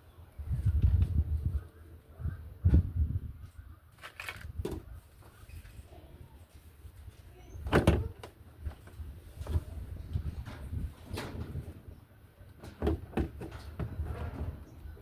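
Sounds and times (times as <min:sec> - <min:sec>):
knocks and clunks of parts handled: 0:04.0 - 0:04.9, 0:12.5 - 0:14.8.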